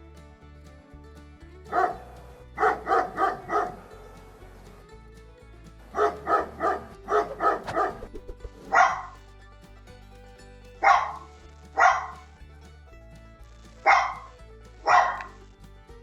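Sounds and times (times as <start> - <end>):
faint background music: 0.0 - 16.0
dog barking: 1.7 - 2.0, 2.6 - 3.8, 6.0 - 8.1, 8.7 - 9.2, 10.8 - 11.2, 11.8 - 12.2, 13.8 - 14.2, 14.8 - 15.3.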